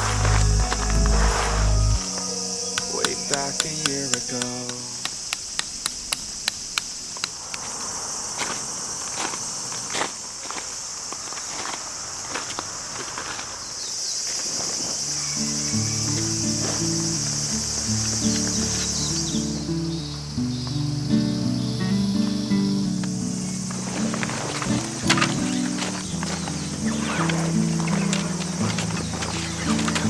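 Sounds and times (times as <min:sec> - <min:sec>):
music: 0:00.0 - 0:04.3, 0:15.0 - 0:30.0
insects chirring: 0:00.0 - 0:30.0.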